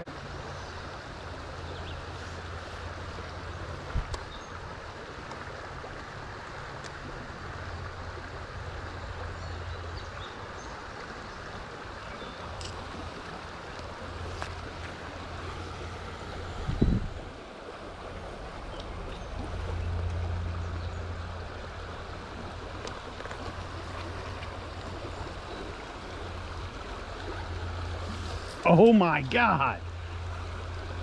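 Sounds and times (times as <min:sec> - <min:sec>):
stream water rushing: 0:00.0 - 0:31.0.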